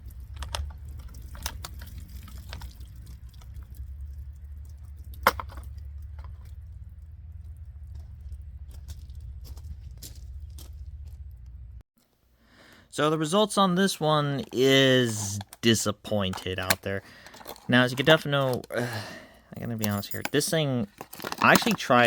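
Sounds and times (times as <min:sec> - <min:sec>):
low hum: 0:00.0 - 0:11.8.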